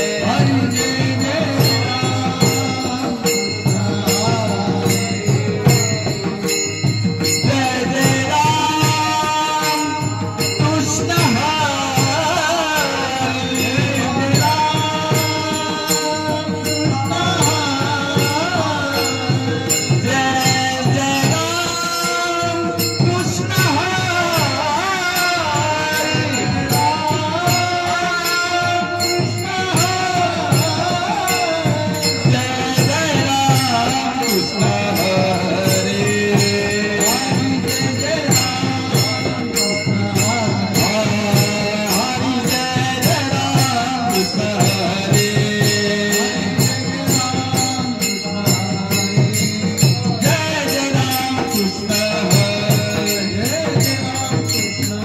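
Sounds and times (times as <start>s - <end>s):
drum strokes: 0.0s - 55.0s
jingling hand percussion: 0.0s - 55.0s
man singing devotional song: 0.0s - 55.0s.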